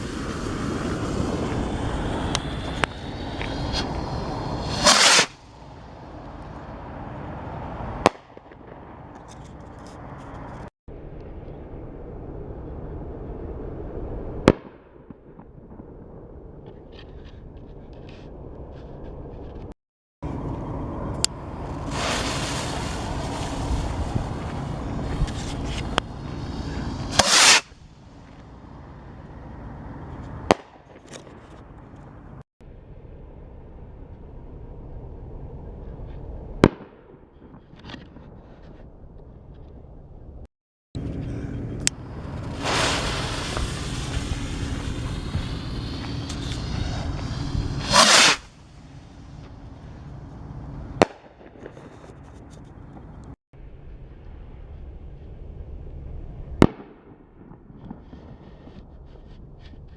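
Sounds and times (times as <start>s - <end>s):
firework burst: 0.0s - 5.6s, 21.6s - 27.8s, 42.1s - 49.3s
fireworks fizzing hiss: 0.0s - 5.8s, 21.3s - 29.3s, 42.0s - 50.2s
fireworks cracks: 0.0s - 6.6s, 21.2s - 32.1s, 41.8s - 53.2s.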